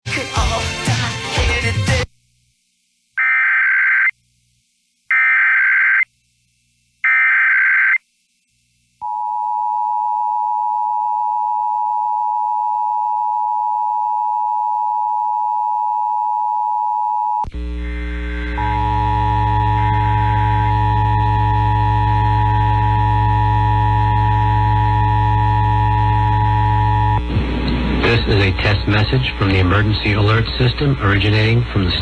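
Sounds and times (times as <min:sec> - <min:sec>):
harsh buzzing tone: 0:17.4 - 0:32.0.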